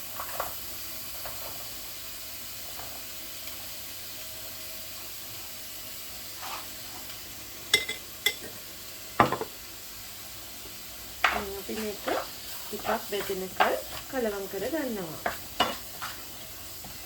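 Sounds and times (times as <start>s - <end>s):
onions sizzling in hot oil: 0.0s - 17.0s
stirring scrapes: 6.4s - 7.0s, 11.7s - 17.0s.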